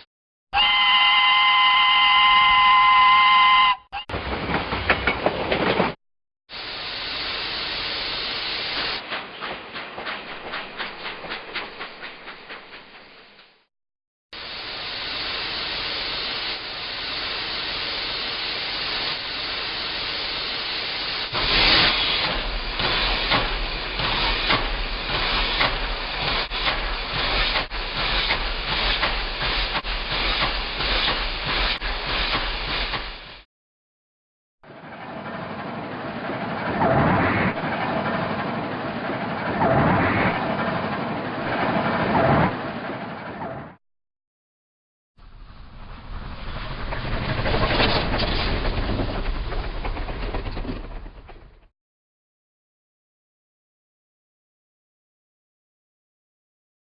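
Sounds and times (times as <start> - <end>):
steam hissing: 6.6 - 9.0, 14.4 - 33.5
steam locomotive chuffing: 6.6 - 13.7, 14.4 - 33.5, 45.2 - 51.7.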